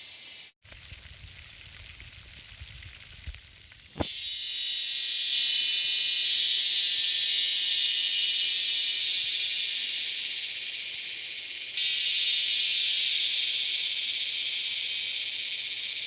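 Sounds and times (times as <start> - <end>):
high-pitched insect drone: 4.0 - 16.0.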